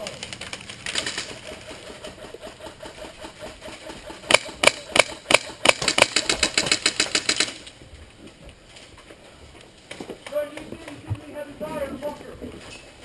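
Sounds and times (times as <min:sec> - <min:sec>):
airsoft guns firing automatic: 0:00.0 - 0:07.7.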